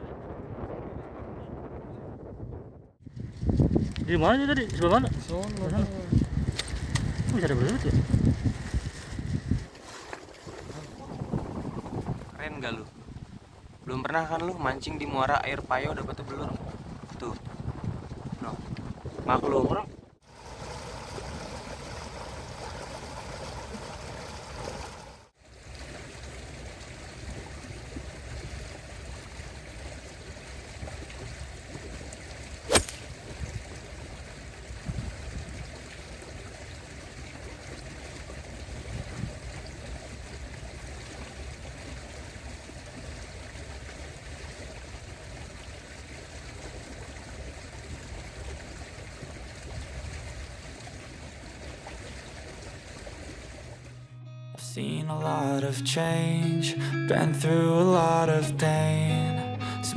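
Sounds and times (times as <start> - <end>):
water trickling: 20.3 - 54.0
sharp click: 32.7 - 33.1.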